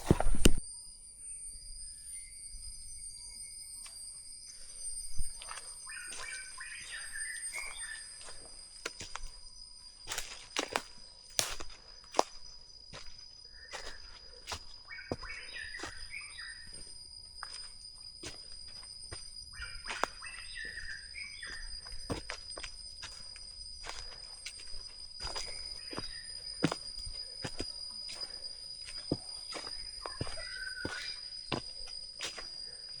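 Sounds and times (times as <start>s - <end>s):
high insect drone: 0.0s - 33.0s
birds chirping: 5.3s - 8.4s, 13.5s - 16.9s, 19.2s - 22.5s, 23.1s - 32.7s.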